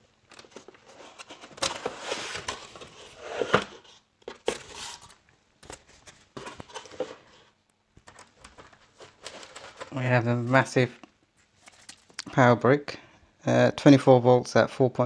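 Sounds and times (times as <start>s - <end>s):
cardboard packaging rustling: 0.0s - 10.7s, 11.4s - 12.2s.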